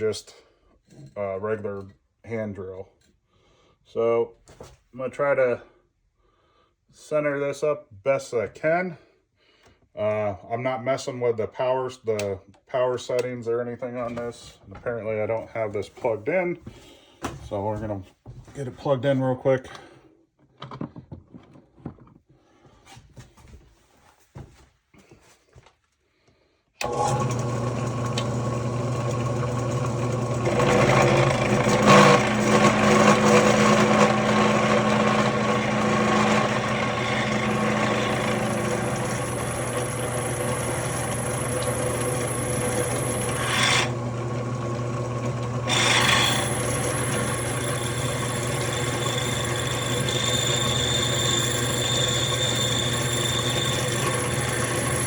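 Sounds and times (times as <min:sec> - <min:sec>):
drill press motor humming: 0:26.8 - 0:55.0
drill bit rasping into metal: 0:29.6 - 0:55.0.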